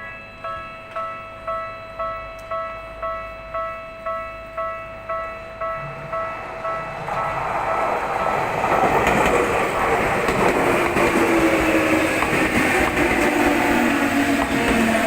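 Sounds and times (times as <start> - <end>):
crossing warning bell ringing: 0.0 - 15.0
electric train running past: 0.0 - 15.0
train whine: 0.0 - 15.0
wheels clicking over rail joints: 7.0 - 15.0.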